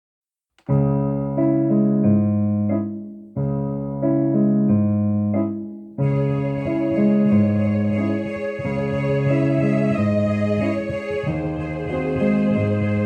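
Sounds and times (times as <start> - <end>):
electronic keyboard folk melody: 0.6 - 13.0.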